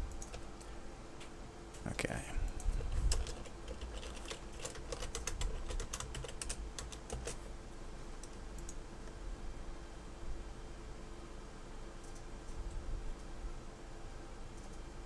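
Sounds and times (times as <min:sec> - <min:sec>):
typing on a keyboard: 0:00.1 - 0:00.7, 0:02.5 - 0:07.5.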